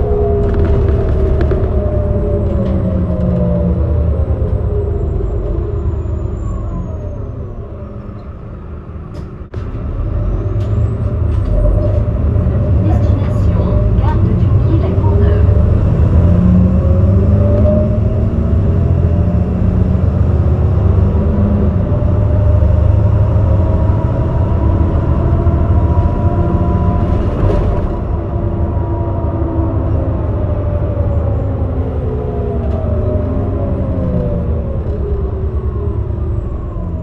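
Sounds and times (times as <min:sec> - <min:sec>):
gearbox whine: 0:00.0 - 0:15.6
bus diesel engine rumble: 0:00.0 - 0:37.0.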